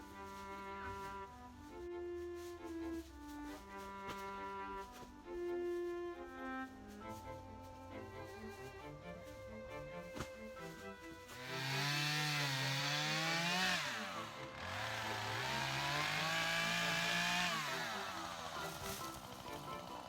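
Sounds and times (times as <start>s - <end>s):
background music: 0.0s - 20.0s
chainsaw revving: 11.2s - 20.0s.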